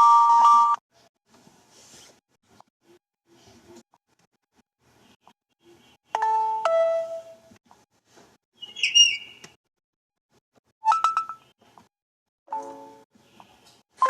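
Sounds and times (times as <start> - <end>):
high warbling chirp: 8.6 - 9.4.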